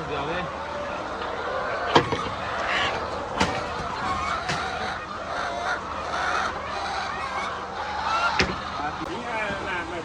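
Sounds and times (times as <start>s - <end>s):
poultry calling: 0.4s - 9.1s
sharp knocks: 3.4s - 5.0s.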